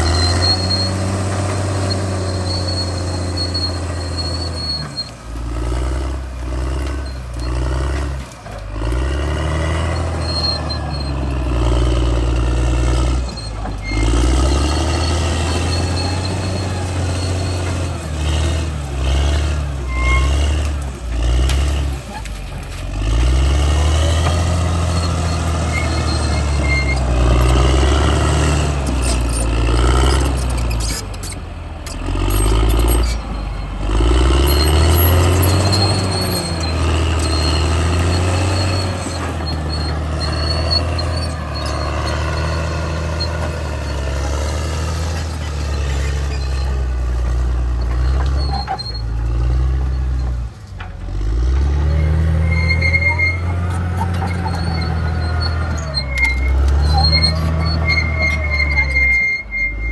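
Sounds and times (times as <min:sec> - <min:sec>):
bulldozer diesel engine: 0:00.0 - 0:59.9.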